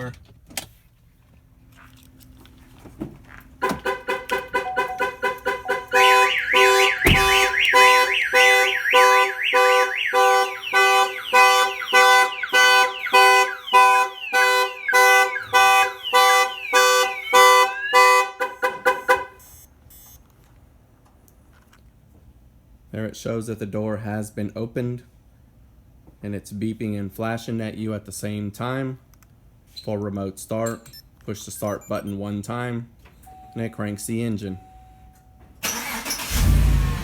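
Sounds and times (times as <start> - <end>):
car alarm siren warbling: 3.6 - 19.4
car horn honking in pulses: 3.6 - 19.6
thump: 7.0 - 7.4.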